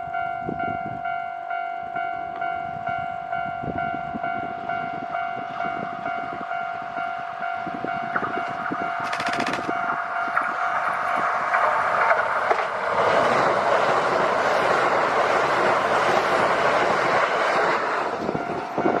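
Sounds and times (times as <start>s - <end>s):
train rushing noise: 2.4s - 19.0s
train wheels clacking on rails: 4.7s - 19.0s.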